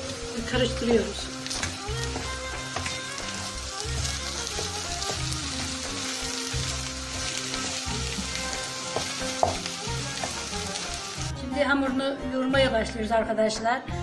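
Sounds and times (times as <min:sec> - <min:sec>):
food sizzling in oil: 0:00.0 - 0:11.4.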